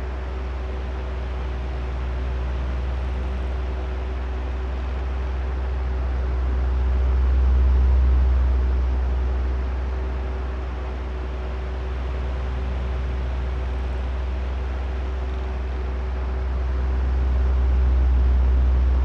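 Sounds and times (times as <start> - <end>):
deep rumble: 16.7 - 19.0.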